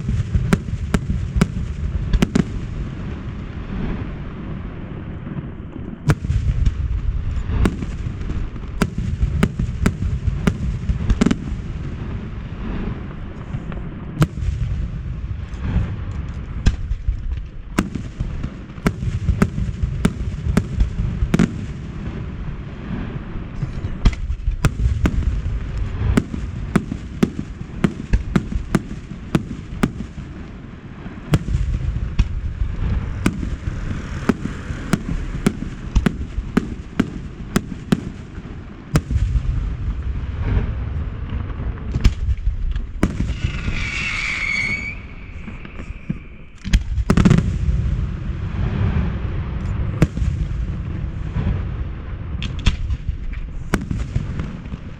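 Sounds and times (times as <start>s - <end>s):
fireworks cracks and bangs: 0.0s - 54.9s
low rumble of shell bursts: 31.2s - 51.6s.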